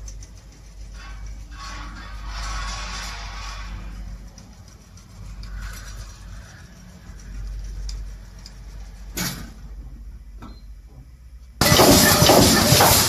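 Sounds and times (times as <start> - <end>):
welding machine humming: 11.6 - 13.0.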